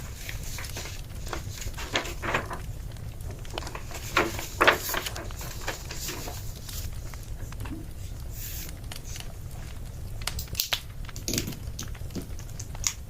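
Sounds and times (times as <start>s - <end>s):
rustling knocks: 0.0s - 2.7s, 3.5s - 6.8s
wood fire crackling: 0.0s - 13.0s.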